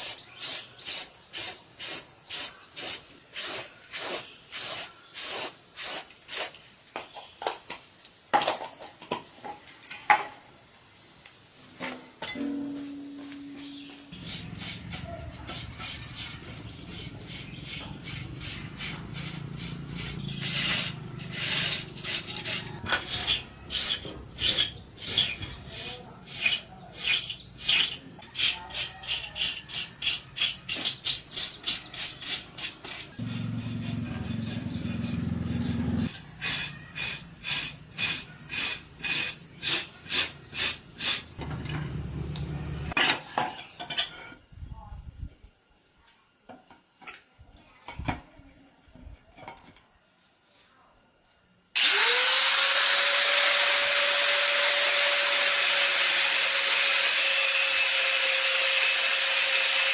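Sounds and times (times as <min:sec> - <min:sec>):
hand sanding strokes: 0:14.2 - 0:35.1.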